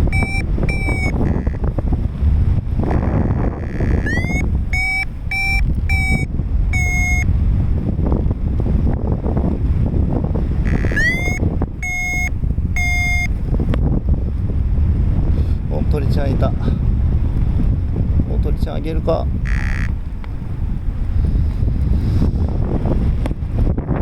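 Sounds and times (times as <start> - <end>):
variometer high beeps: 0.0 - 1.6, 2.9 - 7.3, 10.7 - 13.3, 19.5 - 19.9
wind rushing over microphone: 0.0 - 24.0.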